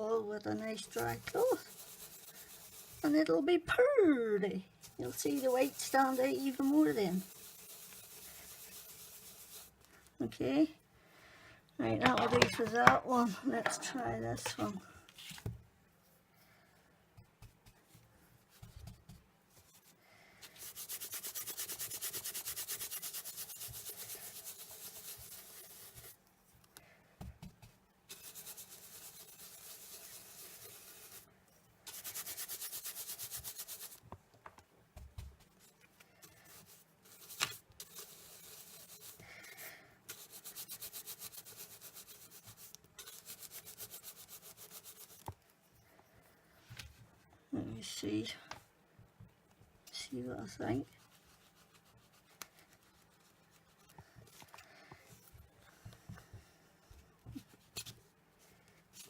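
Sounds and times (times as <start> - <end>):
tool scrubbing over cardstock: 0.6 - 3.2, 4.8 - 9.8, 20.4 - 26.2, 28.1 - 31.3, 31.9 - 34.0, 36.2 - 45.3.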